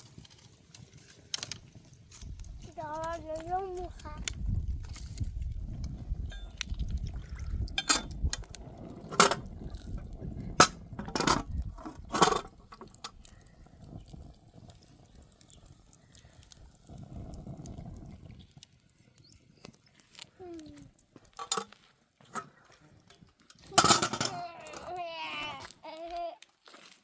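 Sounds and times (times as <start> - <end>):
dishes clinking: 7.8 - 8.1, 23.8 - 24.4.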